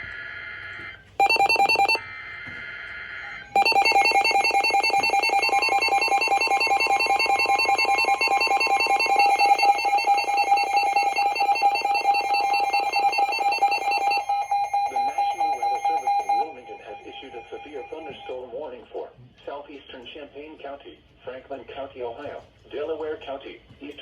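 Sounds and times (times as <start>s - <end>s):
pulsing electronic alarm beep: 1.2s - 2.0s, 3.2s - 18.6s
rapid electronic beeping: 1.2s - 2.0s, 3.6s - 18.6s.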